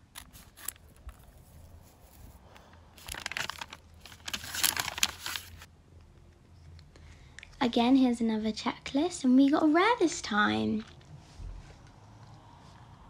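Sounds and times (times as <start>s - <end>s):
plastic packaging crinkling: 0.0s - 5.7s.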